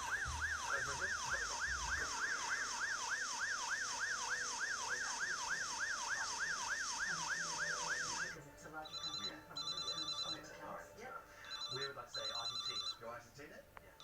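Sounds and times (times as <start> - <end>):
emergency siren yelping: 0.0 - 10.4.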